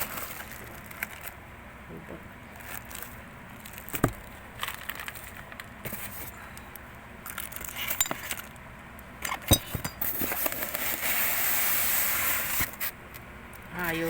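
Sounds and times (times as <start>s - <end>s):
packaging rustling: 0.0s - 1.4s, 2.5s - 6.3s, 7.2s - 8.6s.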